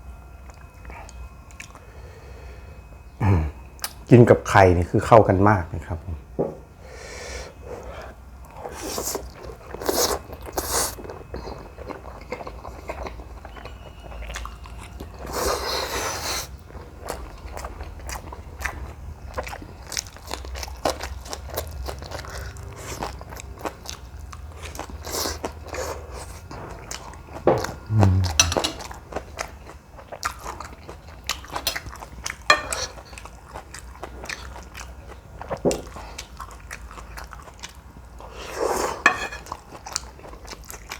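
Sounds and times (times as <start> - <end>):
person chewing noodles: 8.5 - 40.9
short low hum: 27.8 - 28.8.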